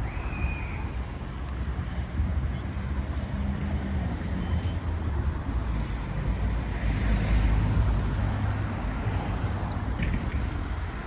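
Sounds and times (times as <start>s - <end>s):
street noise: 0.0s - 11.0s
wind rumbling on microphone: 0.0s - 11.0s.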